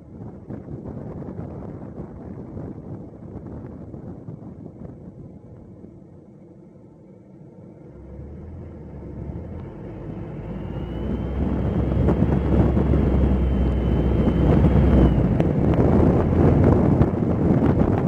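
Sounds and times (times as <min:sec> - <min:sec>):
wind noise on microphone: 0:00.0 - 0:06.2, 0:08.0 - 0:18.0
car engine rumble: 0:00.0 - 0:18.0
faint high whine: 0:04.8 - 0:17.3.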